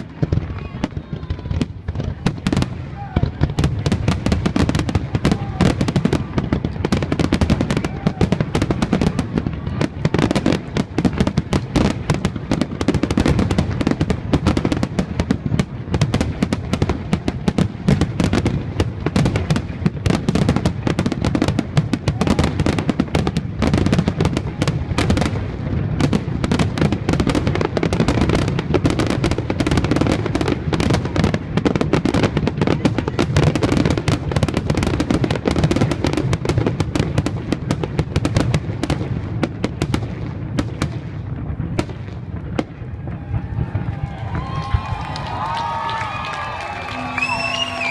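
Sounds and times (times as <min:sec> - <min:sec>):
fireworks popping and banging: 0:00.0 - 0:47.9.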